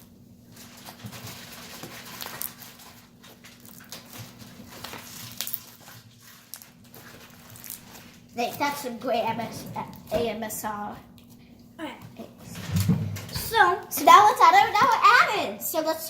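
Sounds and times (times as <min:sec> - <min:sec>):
slime crackling and popping: 0:00.7 - 0:08.7.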